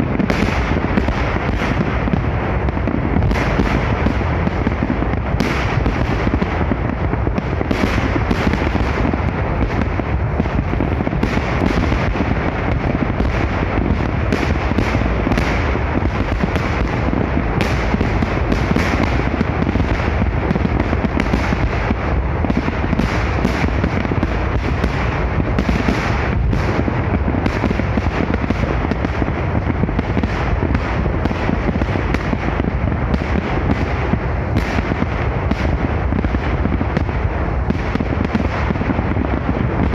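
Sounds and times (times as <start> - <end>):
fireworks bangs and crackles: 0.0 - 39.9.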